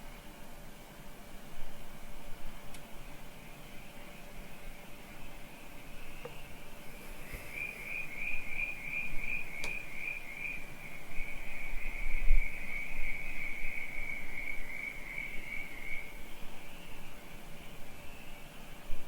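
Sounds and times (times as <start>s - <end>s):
cricket chirping trill: 7.4s - 17.0s.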